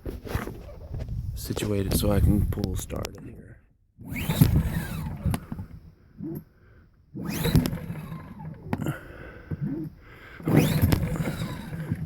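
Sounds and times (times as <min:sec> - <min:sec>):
pull-starter rattles: 0:04.0 - 0:06.5, 0:07.2 - 0:12.0
generator engine cranking: 0:04.0 - 0:12.0.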